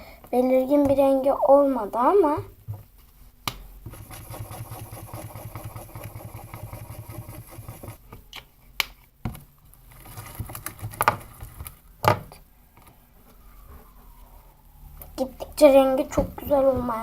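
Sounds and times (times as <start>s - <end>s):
pen scribbling over slime: 3.9s - 8.0s.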